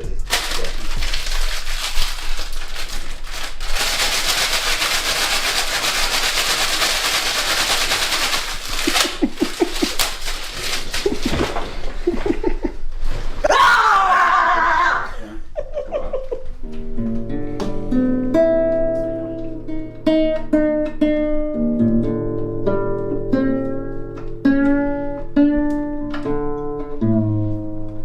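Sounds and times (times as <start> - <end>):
person giggling: 8.7 - 10.2, 10.9 - 12.8, 13.4 - 16.5
loud high scream: 13.4 - 15.4.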